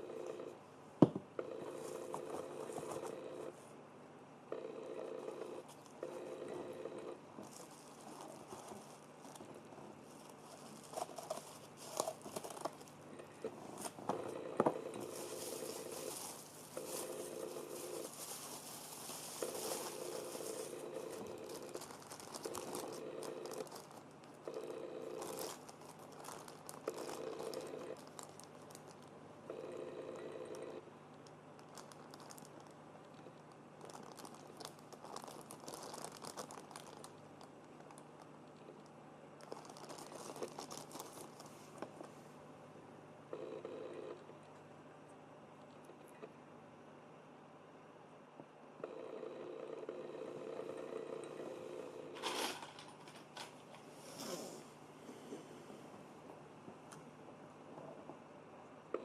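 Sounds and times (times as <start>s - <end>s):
plastic parts crinkling and clicking: 7.4s - 29.1s, 31.1s - 42.1s, 52.2s - 53.9s.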